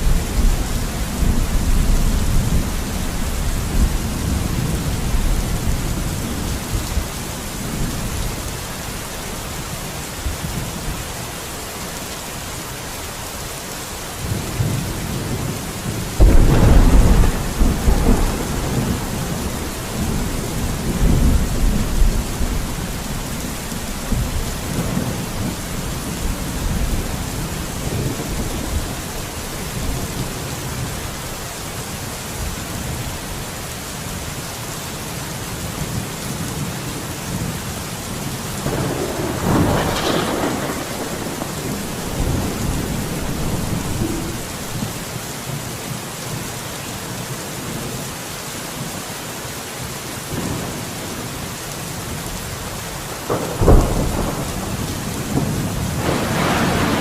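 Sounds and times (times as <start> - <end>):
thunder rumbling: 0.0 - 8.9, 14.2 - 30.9, 38.6 - 45.1, 53.1 - 57.0
heavy rain: 0.0 - 57.0
loud thunderclap: 14.2 - 29.0, 38.6 - 45.0, 53.3 - 57.0.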